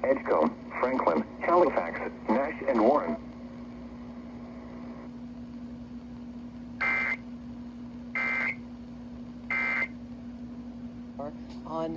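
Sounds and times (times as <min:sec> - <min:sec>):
steady low hum: 0:00.0 - 0:11.9
buzzy digital squawks: 0:06.8 - 0:07.2, 0:08.2 - 0:08.6.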